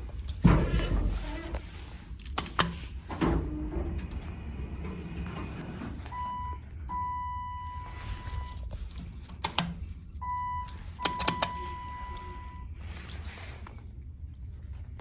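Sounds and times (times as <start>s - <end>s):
elevator beeper tone: 5.8s - 8.7s, 10.2s - 12.8s.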